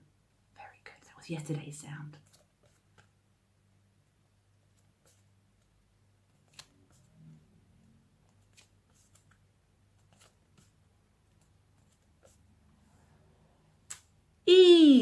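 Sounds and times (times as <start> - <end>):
paper flashcards clicking: 6.4 - 7.0, 8.3 - 12.4.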